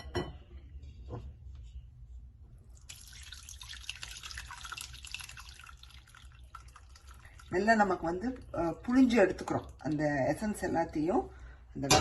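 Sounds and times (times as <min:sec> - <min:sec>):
liquid splashing through a strainer: 0:02.8 - 0:07.6.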